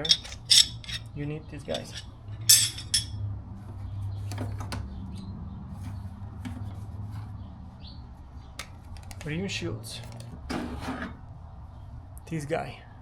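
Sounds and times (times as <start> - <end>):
metal tools clinking: 0.0 - 3.2.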